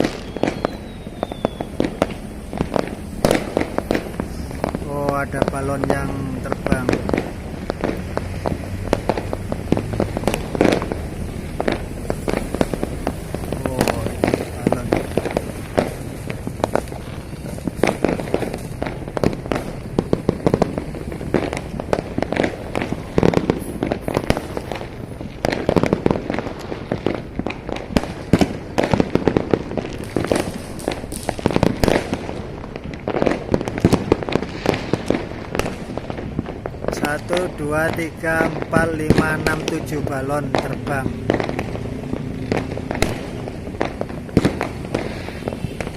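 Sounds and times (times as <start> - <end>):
fireworks and firecrackers popping: 0.0 - 45.9.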